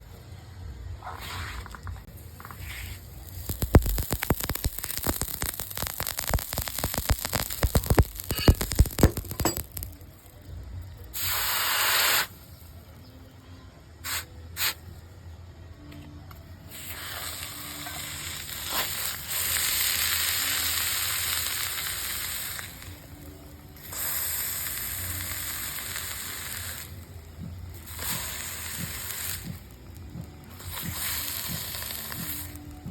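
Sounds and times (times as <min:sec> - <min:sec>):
hot steel sizzling in liquid: 0:02.4 - 0:10.0, 0:11.1 - 0:12.4, 0:16.7 - 0:32.9.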